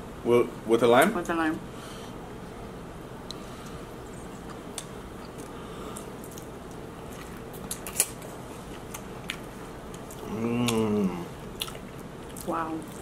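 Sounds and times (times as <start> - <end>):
food chewing squishes: 3.3 - 13.0.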